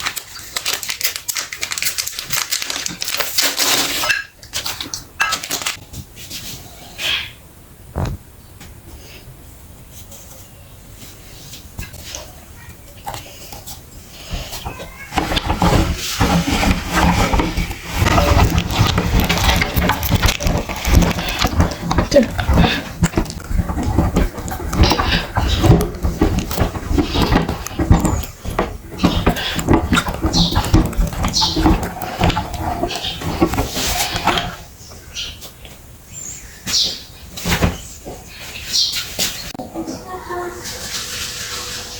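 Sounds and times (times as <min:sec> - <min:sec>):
grinding crackle: 0:14.8 - 0:34.6.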